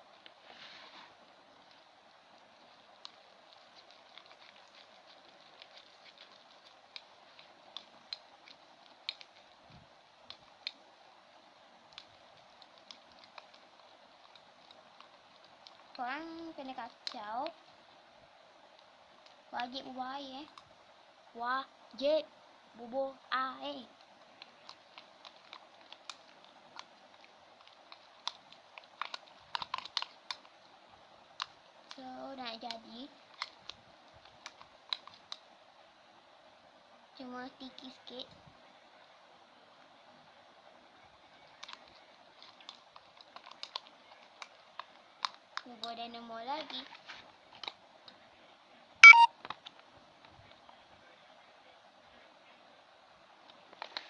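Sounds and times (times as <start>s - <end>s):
steady hiss: 0.0s - 49.0s
slime stirred with spoon: 2.6s - 10.8s.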